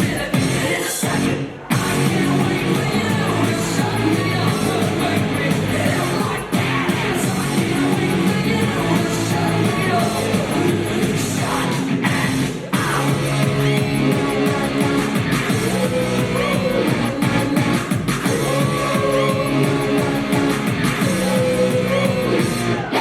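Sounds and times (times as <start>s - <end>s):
loud rock music with singing: 0.0s - 23.0s.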